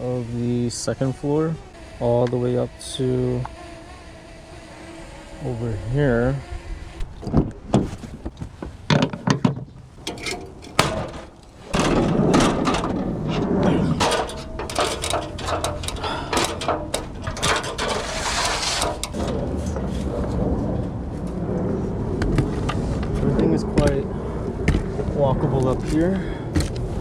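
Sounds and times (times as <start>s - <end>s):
steady rushing noise: 0.0s - 8.8s, 9.8s - 27.0s
footsteps and knocks on a roof: 26.5s - 26.8s.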